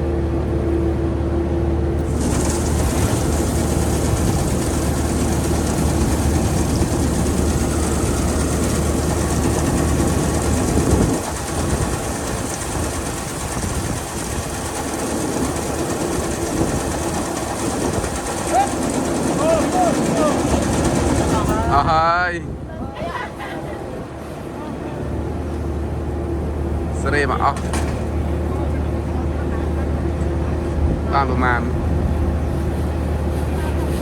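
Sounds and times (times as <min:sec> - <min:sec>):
low engine hum: 0:00.0 - 0:22.8
clattering machine rattle: 0:02.0 - 0:21.8, 0:27.5 - 0:28.2.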